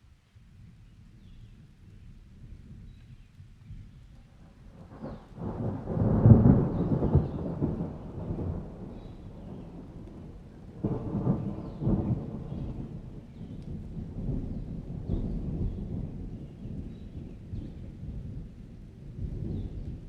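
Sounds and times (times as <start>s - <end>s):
thunder rumbling: 4.5s - 20.0s.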